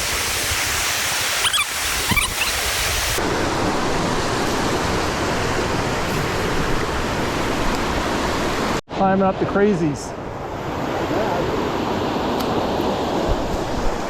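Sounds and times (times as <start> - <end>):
fast creek water rushing: 0.0 - 8.8.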